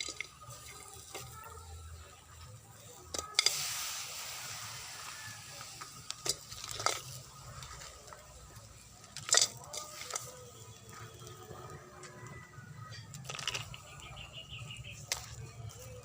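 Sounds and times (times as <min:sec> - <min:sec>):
pan hissing: 0:03.2 - 0:07.1.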